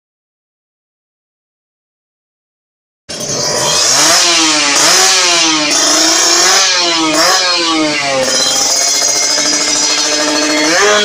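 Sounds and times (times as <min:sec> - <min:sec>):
motorcycle engine revving: 0:03.1 - 0:11.0.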